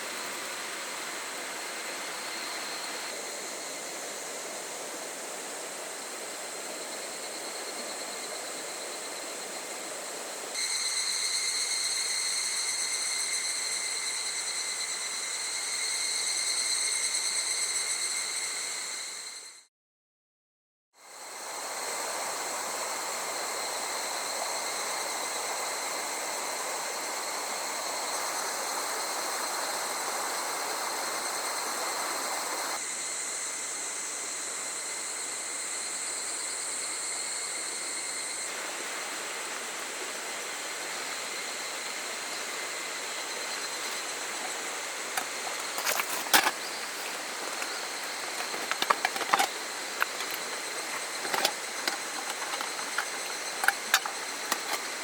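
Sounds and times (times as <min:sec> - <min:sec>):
small river flowing: 0:00.0 - 0:13.4, 0:38.5 - 0:55.0
high insect drone: 0:00.0 - 0:19.6, 0:21.0 - 0:55.0
sharp clicks and knocks: 0:45.2 - 0:55.0.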